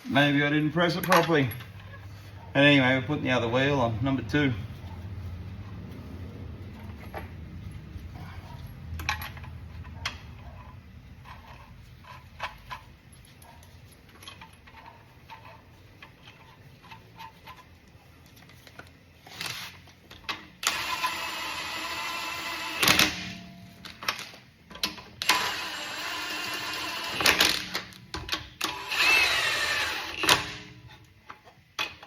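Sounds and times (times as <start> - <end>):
cordless impact wrench spinning: 20.6 - 23.2, 25.2 - 27.9, 28.6 - 30.7.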